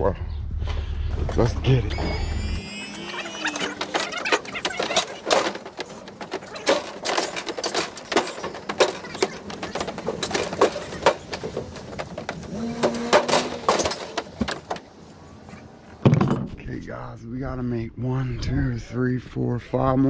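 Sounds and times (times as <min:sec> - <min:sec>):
short squeak: 0:01.8 - 0:05.2
appliances knocking and clanking: 0:02.8 - 0:15.0.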